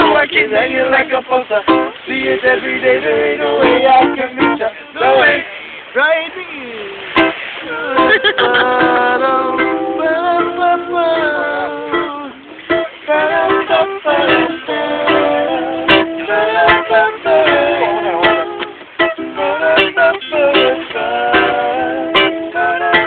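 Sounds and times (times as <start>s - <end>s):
bending string melody: 7.1s - 23.0s
strummed string chords: 7.1s - 23.0s.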